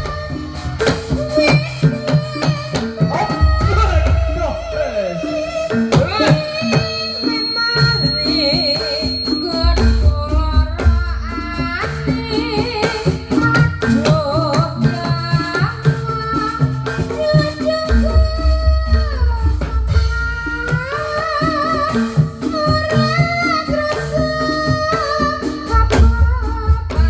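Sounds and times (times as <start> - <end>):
hand drums: 0.0 - 27.0
wavering melodic line: 3.2 - 12.7
deep bass beat: 3.4 - 4.8.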